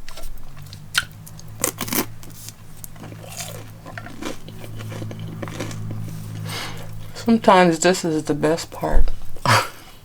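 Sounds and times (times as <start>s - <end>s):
crunchy food chewing: 0.0s - 7.1s
steady low hum: 0.0s - 10.0s.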